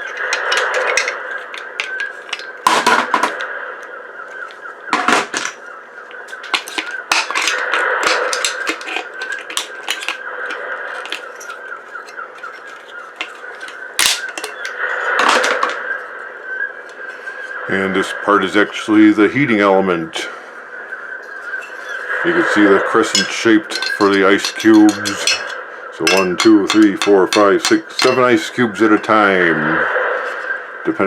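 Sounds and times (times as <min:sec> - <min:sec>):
plastic and metal parts clattering: 0:00.0 - 0:03.5, 0:04.4 - 0:15.8, 0:21.3 - 0:29.1.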